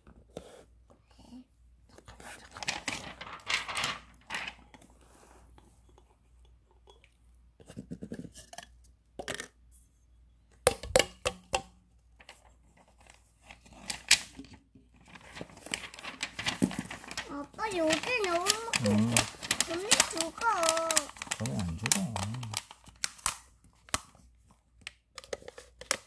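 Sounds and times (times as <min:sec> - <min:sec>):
rustling and scraping: 0:12.2 - 0:22.7.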